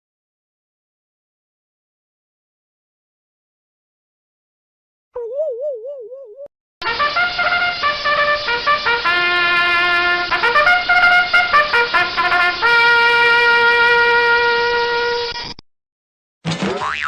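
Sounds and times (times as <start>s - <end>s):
trumpet notes: 6.8s - 15.4s.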